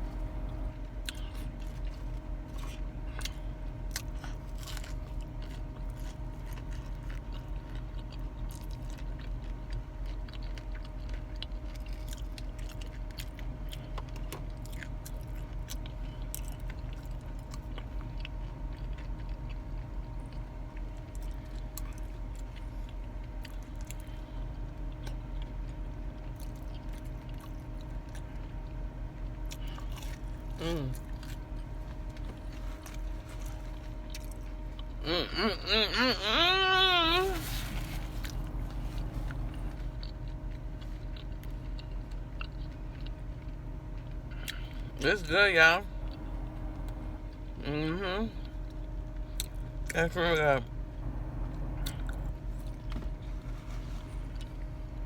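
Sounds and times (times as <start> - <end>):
low hum: 0.0 - 55.0
crunchy chewing and biting: 0.1 - 35.4, 36.6 - 50.1, 51.0 - 55.0.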